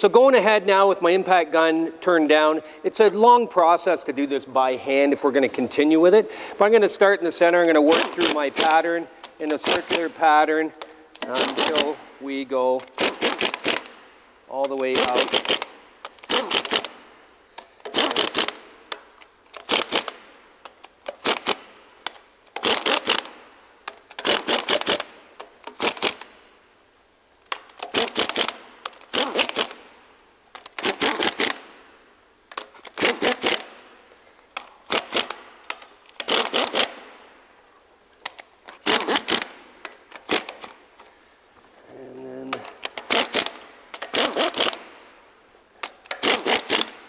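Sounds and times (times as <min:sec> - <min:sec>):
impact gun hammering bolts: 0:12.8 - 0:14.0, 0:34.6 - 0:37.1, 0:42.5 - 0:44.9, 0:45.8 - 0:47.0.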